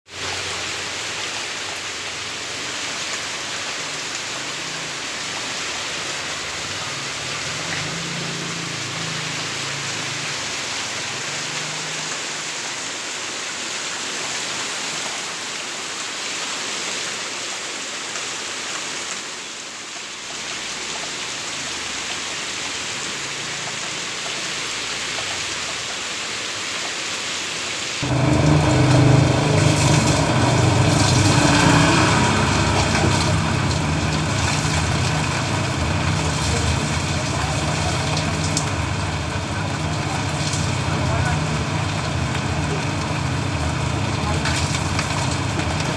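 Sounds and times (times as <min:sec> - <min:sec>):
heavy rain on road: 0:00.1 - 0:45.9
low tonal sound: 0:28.0 - 0:45.9.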